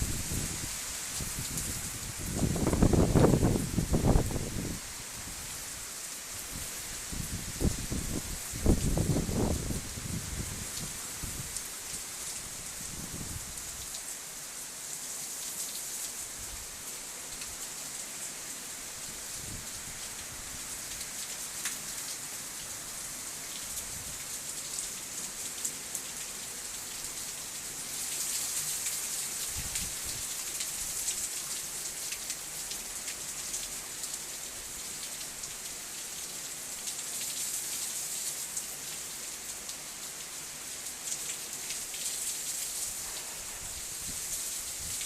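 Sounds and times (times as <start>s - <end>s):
heavy rain and sleet pattering: 0.0s - 45.0s.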